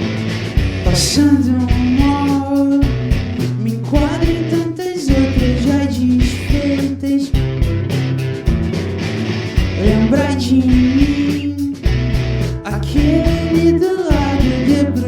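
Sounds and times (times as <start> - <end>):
bass: 0.0 - 15.0
drums: 0.0 - 15.0
guitars: 0.0 - 15.0
person singing: 0.8 - 7.6, 9.8 - 12.0, 12.6 - 15.0.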